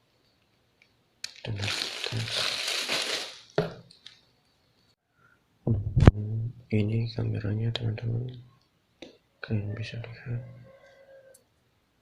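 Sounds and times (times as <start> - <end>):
packaging crinkling: 1.2 - 4.2.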